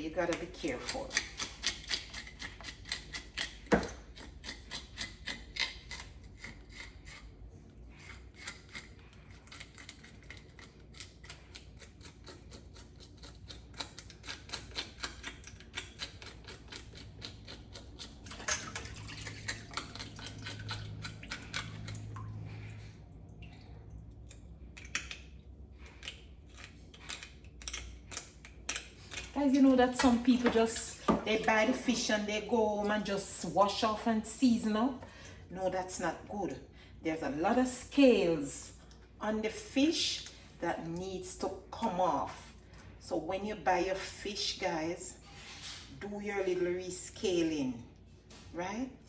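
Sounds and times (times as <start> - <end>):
knife scraping fish scales: 0.3 - 22.1, 25.8 - 31.8.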